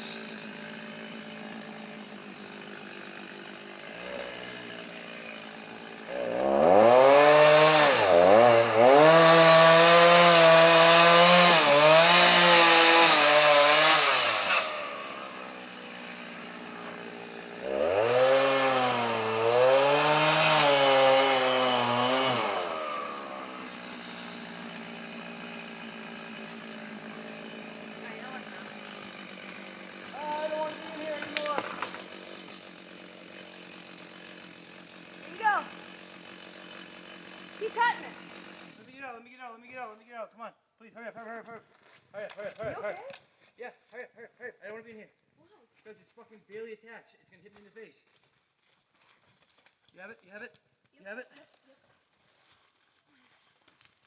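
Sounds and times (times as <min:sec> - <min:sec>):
chainsaw cutting into tree: 0:00.0 - 0:39.1, 0:51.4 - 0:54.0.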